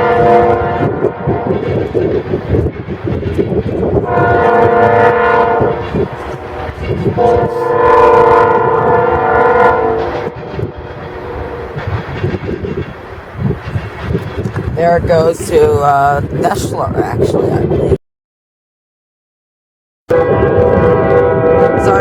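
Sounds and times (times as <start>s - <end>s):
locomotive air horn blasts: 0.0s - 1.8s, 4.0s - 10.4s, 20.1s - 22.0s
moving train rumble: 0.0s - 18.0s, 20.1s - 22.0s.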